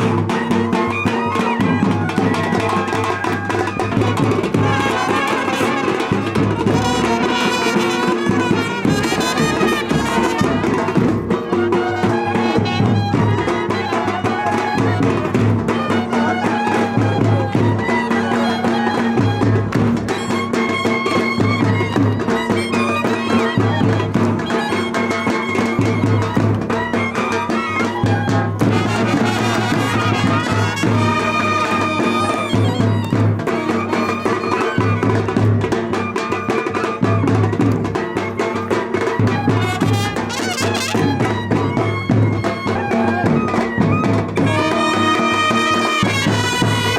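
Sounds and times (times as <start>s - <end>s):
steady drum beat: 0.0s - 46.9s
brass music: 4.0s - 13.3s, 28.6s - 32.9s, 39.6s - 41.4s, 44.4s - 46.9s.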